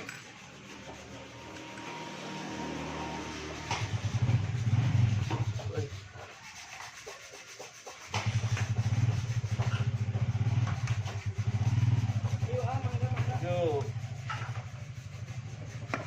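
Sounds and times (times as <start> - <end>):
scooter engine running: 1.0 - 5.8, 8.1 - 16.0.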